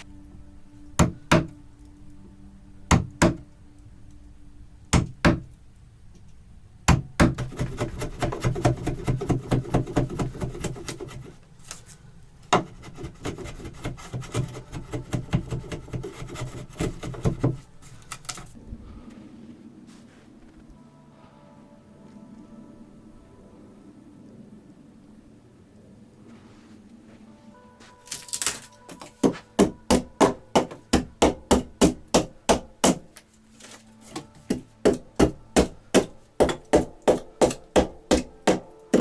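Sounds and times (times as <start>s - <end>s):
sharp knocks on wood: 1.0s - 1.5s, 5.0s - 5.5s, 6.9s - 10.5s, 29.0s - 33.1s
rapid scraping strokes on wood: 7.4s - 18.6s.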